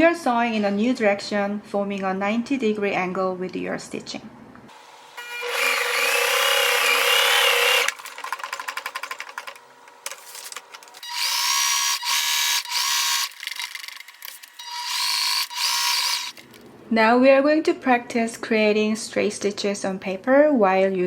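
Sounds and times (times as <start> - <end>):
sewing machine motor whining: 5.2 - 8.0, 11.0 - 16.4.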